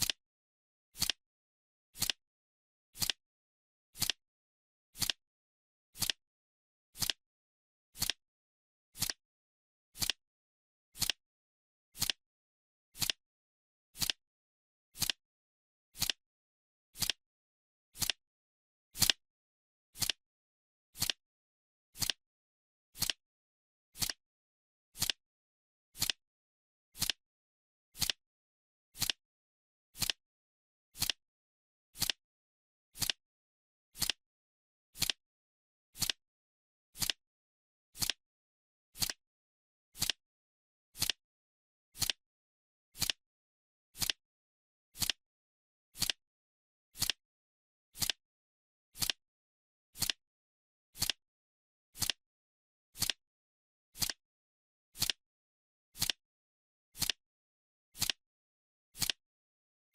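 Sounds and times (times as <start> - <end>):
clock-style timer ticking: 1.0 - 1.2, 3.0 - 3.2, 4.0 - 4.2, 6.0 - 6.2, 7.0 - 7.2, 8.0 - 8.2, 11.0 - 11.2, 12.0 - 12.2, 17.0 - 17.2, 18.0 - 18.2, 21.0 - 21.2, 22.0 - 22.2, 23.0 - 23.2, 27.0 - 27.2, 28.0 - 28.2, 29.0 - 29.2, 30.0 - 30.2, 31.0 - 31.2, 32.0 - 32.2, 33.0 - 33.2, 34.0 - 34.2, 36.0 - 36.2, 37.0 - 37.2, 38.0 - 38.2, 39.0 - 39.2, 40.0 - 40.2, 41.0 - 41.2, 42.0 - 42.2, 43.0 - 43.2, 44.0 - 44.2, 45.0 - 45.2, 46.0 - 46.2, 47.0 - 47.2, 48.0 - 48.2, 49.0 - 49.2, 50.0 - 50.2, 51.0 - 51.2, 52.0 - 52.2, 53.0 - 53.2, 54.0 - 54.2, 55.0 - 55.2, 56.0 - 56.2, 57.0 - 57.2, 58.0 - 58.2, 59.0 - 59.2.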